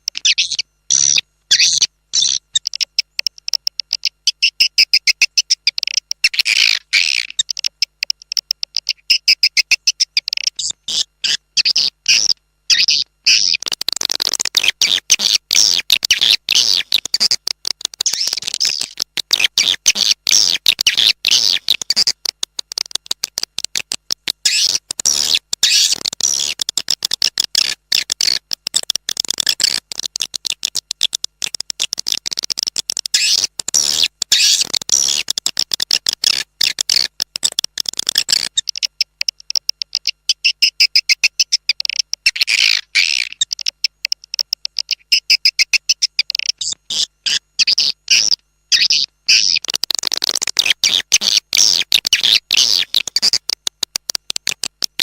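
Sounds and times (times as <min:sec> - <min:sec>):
swiftlet chirps chattering: 0:00.1 - 0:23.6.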